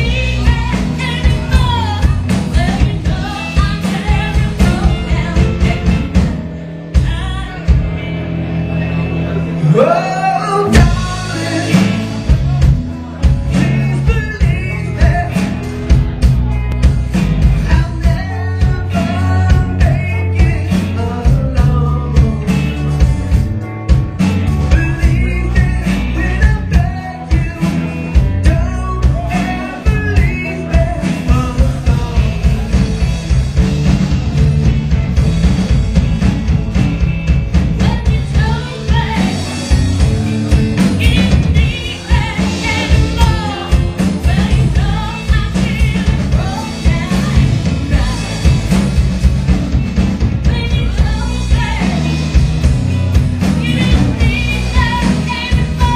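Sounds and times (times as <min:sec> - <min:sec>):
person singing: 0:00.0 - 0:06.2, 0:09.3 - 0:15.9, 0:17.5 - 0:23.2, 0:24.2 - 0:33.2, 0:37.8 - 0:49.2, 0:50.4 - 0:55.9
live rock band playing: 0:00.0 - 0:55.9.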